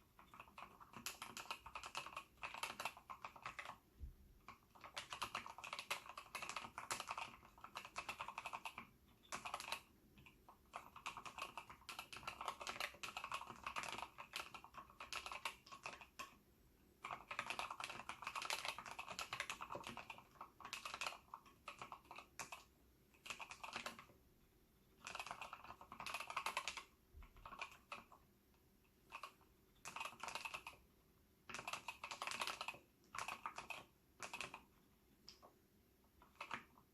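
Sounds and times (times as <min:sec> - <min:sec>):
mechanical keyboard typing: 0:00.0 - 0:16.4, 0:17.0 - 0:24.2, 0:24.9 - 0:28.2, 0:29.0 - 0:35.5, 0:36.1 - 0:36.9.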